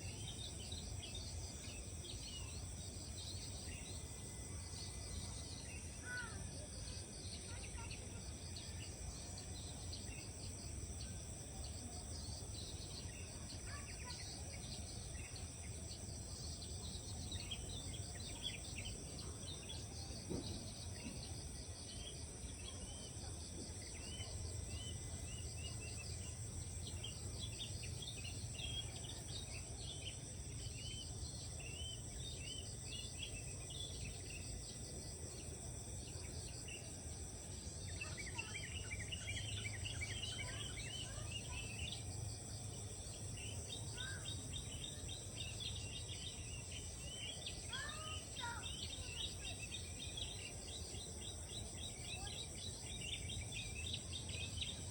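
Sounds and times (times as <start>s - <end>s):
insects droning: 0.0s - 54.9s
small birds chirping: 5.5s - 21.5s, 37.7s - 54.9s.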